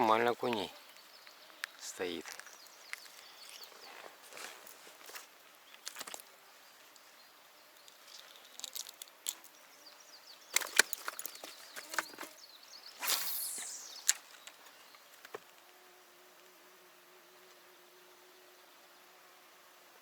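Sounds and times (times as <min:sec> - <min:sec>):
flying insect buzzing: 0:00.4 - 0:05.2, 0:05.8 - 0:20.0
fishing line casting swish: 0:12.9 - 0:14.4.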